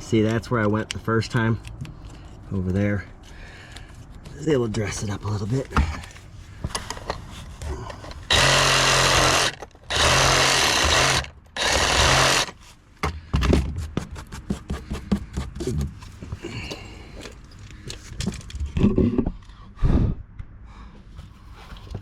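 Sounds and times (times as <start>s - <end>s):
power saw cutting wood: 8.3s - 12.6s.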